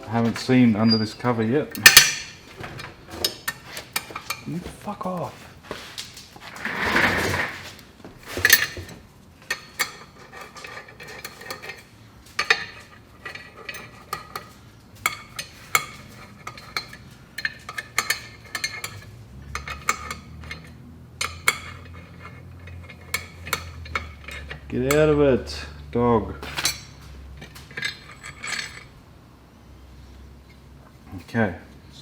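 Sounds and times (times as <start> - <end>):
metal tools clinking: 0.1 - 5.1, 8.3 - 25.8, 26.4 - 29.0.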